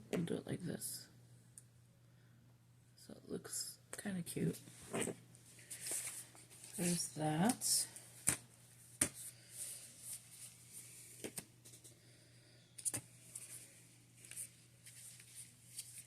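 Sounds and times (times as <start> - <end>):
paper rustling: 4.9 - 7.6, 12.8 - 16.0.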